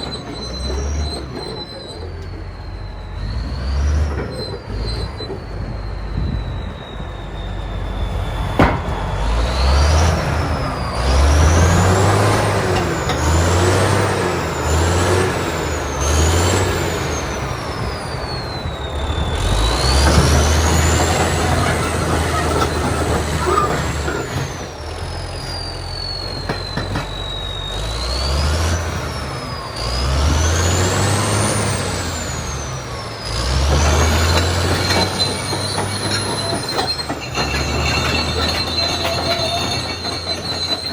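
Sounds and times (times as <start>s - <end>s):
bulldozer diesel engine surging: 0.0s - 40.9s
high squealing whine: 0.0s - 40.9s.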